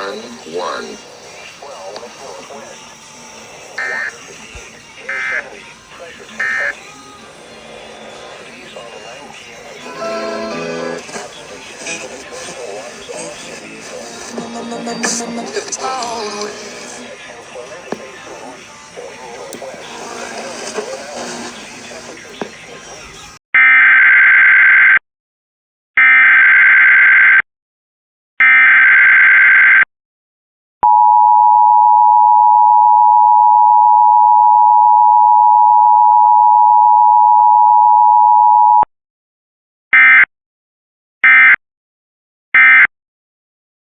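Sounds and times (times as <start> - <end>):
steady attention tone: 3.8 - 4.2
warbling two-tone data bursts: 3.8 - 4.2, 6.4 - 6.8.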